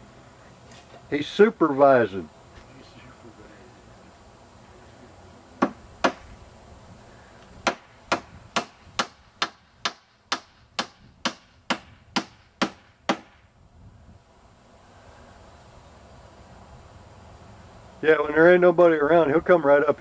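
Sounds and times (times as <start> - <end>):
hammer strikes: 5.6 - 6.3, 7.6 - 13.4.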